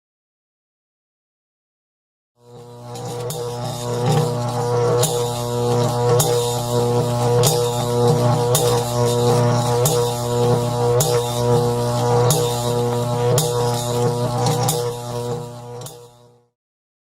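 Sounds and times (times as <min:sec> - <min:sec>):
electrical buzz: 0:02.4 - 0:16.3
electric zaps crackling: 0:02.8 - 0:16.0.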